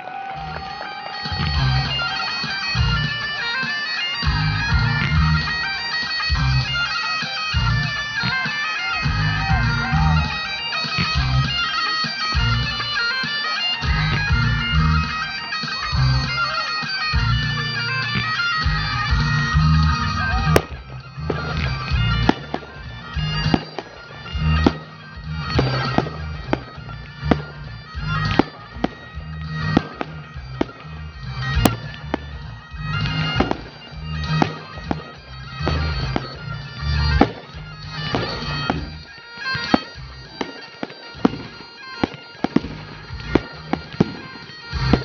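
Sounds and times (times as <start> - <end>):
bagpipe music: 0.0 - 45.0
sharp crack: 0.0 - 45.0
heavy low thuds: 4.2 - 6.9, 13.8 - 15.2, 17.1 - 40.5.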